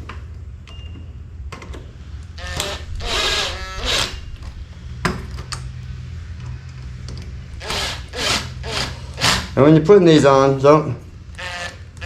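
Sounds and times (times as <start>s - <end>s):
cordless drill driving screws: 2.4s - 4.2s, 7.6s - 9.6s, 11.4s - 12.0s.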